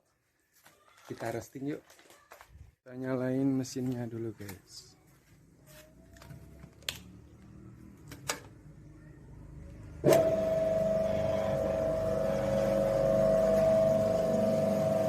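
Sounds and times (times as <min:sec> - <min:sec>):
roaster motor humming and whining: 0:10.0 - 0:15.0.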